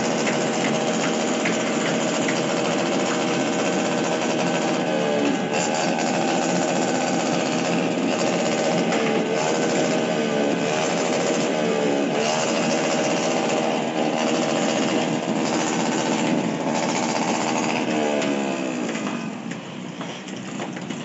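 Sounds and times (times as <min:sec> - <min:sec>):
fast rattling and banging: 0:00.0 - 0:04.8.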